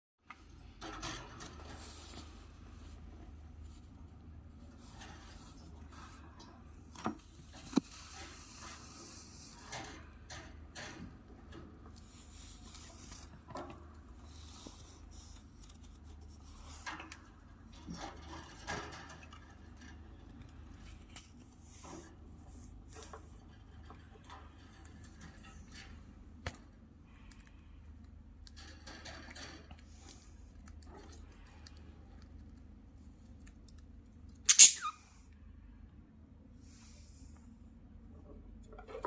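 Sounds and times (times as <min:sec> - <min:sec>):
bird pecking and cracking seeds: 0:26.4 - 0:34.8.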